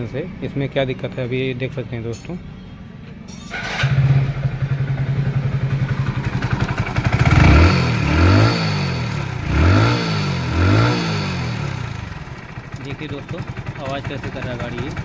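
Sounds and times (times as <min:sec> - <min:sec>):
loud engine rattling: 0:03.5 - 0:15.0
motorcycle engine idling and revving: 0:03.5 - 0:15.0.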